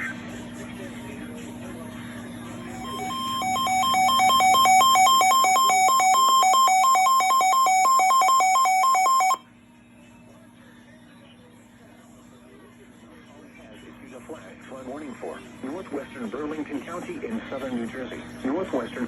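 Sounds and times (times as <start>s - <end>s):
two-pitch electronic alarm beeping: 2.7s - 9.4s.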